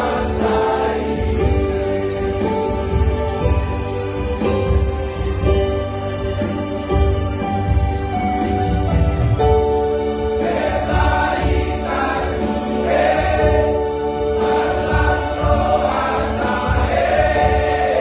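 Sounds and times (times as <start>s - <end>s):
voices singing gospel in harmony: 0.0s - 6.5s, 9.7s - 18.0s
musical accompaniment: 0.0s - 18.0s.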